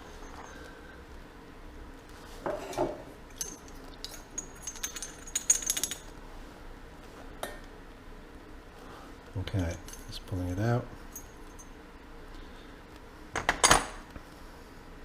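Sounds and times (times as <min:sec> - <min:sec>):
metal parts clinking: 0:03.3 - 0:06.1.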